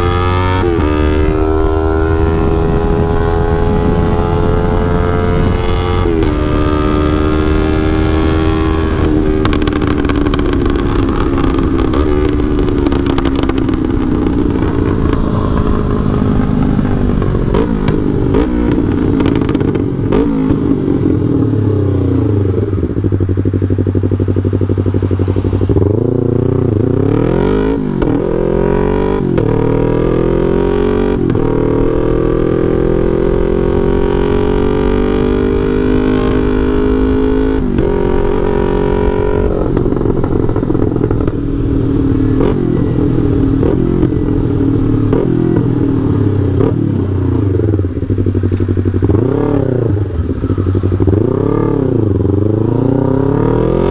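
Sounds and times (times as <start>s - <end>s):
motorcycle engine revving: 0.0s - 53.9s
exhaust crackling pops: 8.4s - 20.8s, 37.2s - 45.8s.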